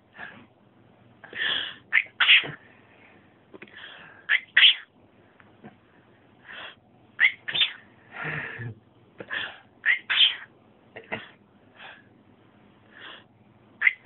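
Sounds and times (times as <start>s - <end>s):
cockatiel sneezing: 1.9s - 2.6s, 4.3s - 4.9s, 7.2s - 7.8s, 9.8s - 10.5s.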